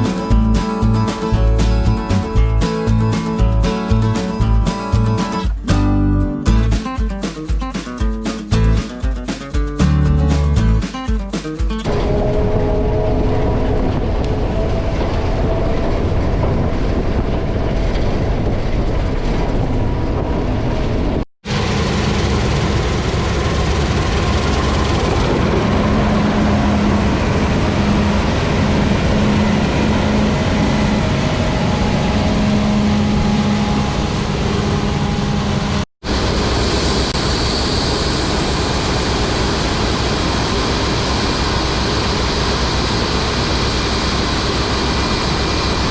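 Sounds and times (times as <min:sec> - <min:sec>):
heavy machinery engine drone: 0:11.9 - 0:45.9.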